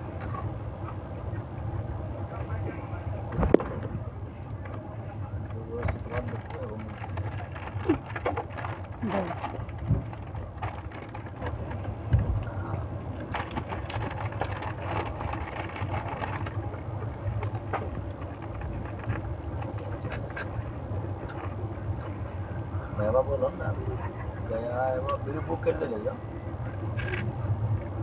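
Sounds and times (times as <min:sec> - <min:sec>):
train rumbling inside carriage: 0:00.0 - 0:28.0
rattles and knocks: 0:05.4 - 0:12.4.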